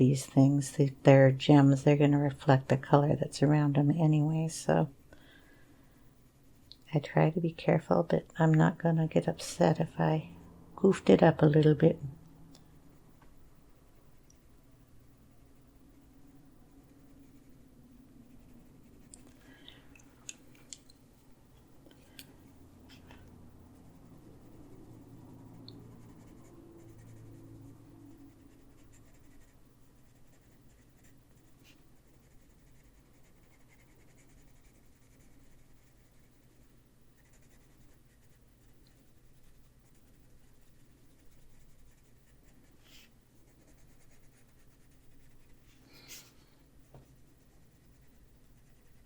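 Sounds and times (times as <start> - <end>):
pencil scratching on paper: 18.2 - 19.1, 22.9 - 49.0.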